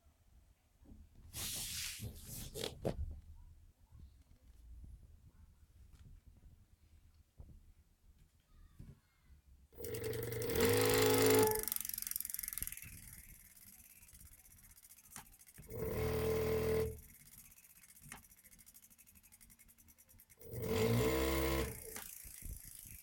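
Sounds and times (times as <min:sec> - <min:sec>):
electric motor high-pitched hum: 0:09.8 - 0:23.0.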